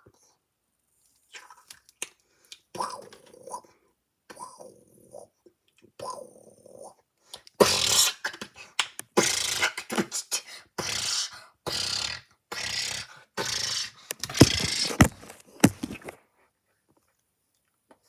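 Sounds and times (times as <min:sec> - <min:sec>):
person beatboxing: 0:07.6 - 0:15.1.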